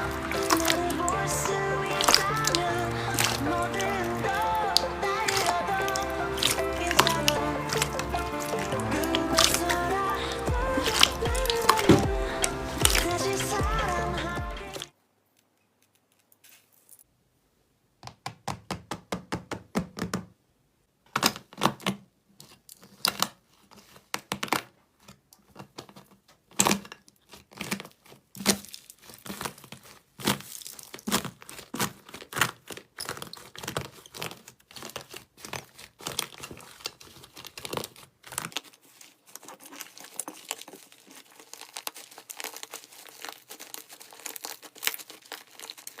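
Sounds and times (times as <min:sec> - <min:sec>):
slime crackling and popping: 0:00.0 - 0:14.9, 0:26.5 - 0:46.0.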